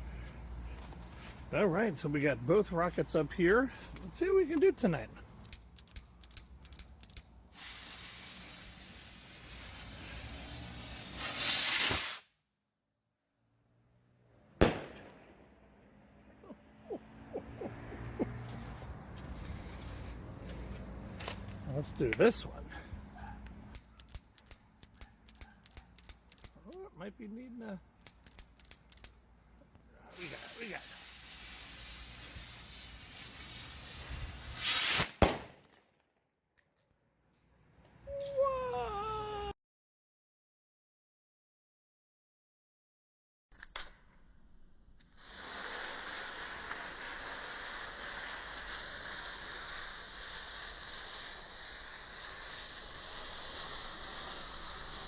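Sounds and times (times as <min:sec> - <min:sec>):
firework fuse hissing: 0:01.3 - 0:12.4, 0:18.0 - 0:29.2, 0:30.0 - 0:35.5, 0:45.0 - 0:55.0
firework bang: 0:07.6 - 0:12.2, 0:14.6 - 0:16.0, 0:34.3 - 0:35.8
rocket motor rushing: 0:46.0 - 0:55.0.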